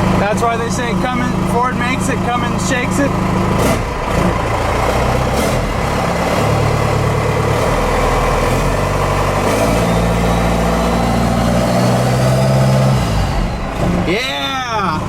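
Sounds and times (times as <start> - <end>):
diesel engine revving: 0.0 - 15.0
turbocharger whistle: 8.9 - 14.9.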